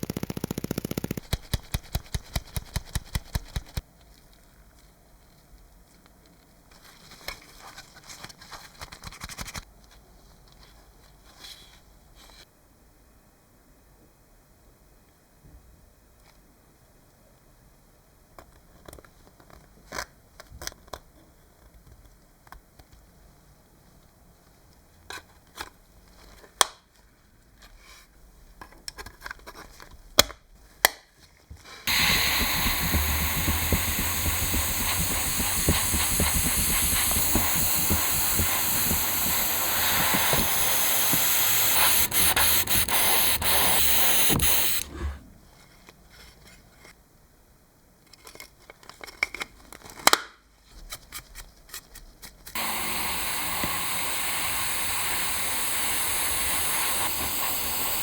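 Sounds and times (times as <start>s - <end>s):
loud spraying hiss: 31.9s - 45.2s, 52.6s - 58.0s.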